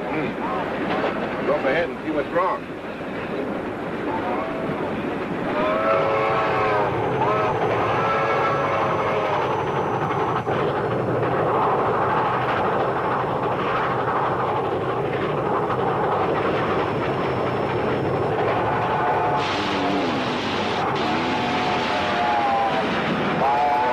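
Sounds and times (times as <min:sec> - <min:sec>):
cartoon train rail noise: 0:18.4 - 0:23.9.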